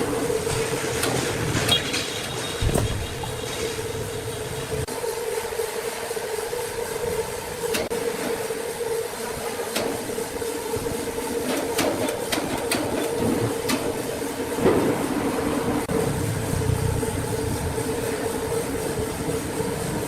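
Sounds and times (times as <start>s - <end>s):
sawmill machinery humming: 0.0s - 20.0s.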